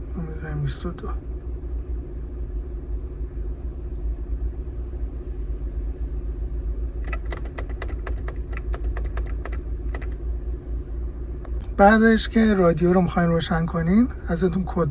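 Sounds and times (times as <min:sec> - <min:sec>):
car engine idling: 0:00.0 - 0:14.9.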